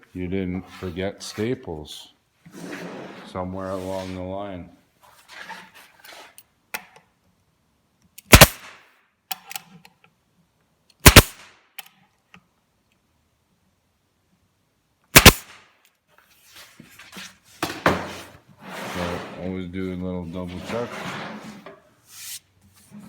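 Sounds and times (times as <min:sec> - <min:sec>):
pneumatic staple gun firing: 0:08.2 - 0:08.7, 0:11.0 - 0:11.4, 0:15.2 - 0:15.6
faint handling noise: 0:15.8 - 0:23.0.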